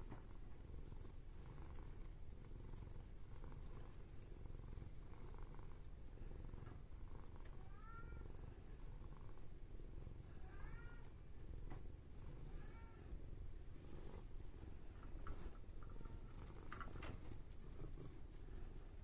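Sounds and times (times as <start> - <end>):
cat purring: 0.0 - 19.0
cat meow: 7.6 - 8.3, 10.4 - 11.2, 12.5 - 13.1.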